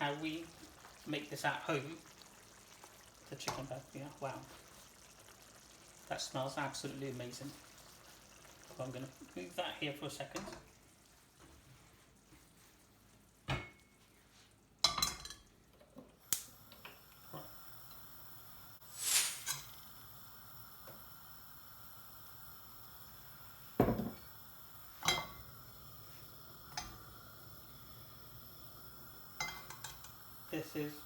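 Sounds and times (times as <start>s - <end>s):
faint steady hum: 14.8s - 31.0s
pans and utensils clinking: 25.0s - 25.4s, 29.4s - 30.1s.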